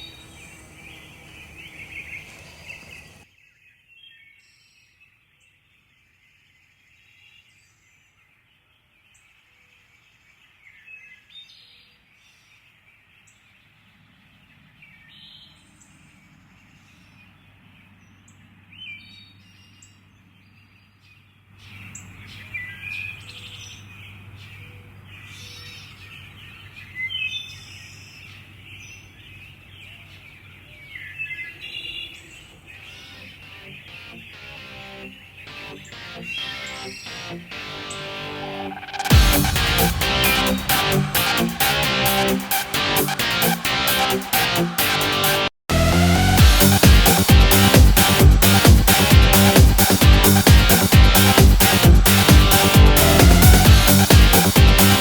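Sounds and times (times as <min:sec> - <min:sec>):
small birds chirping: 0:00.0 - 0:03.3, 0:05.4 - 0:39.6.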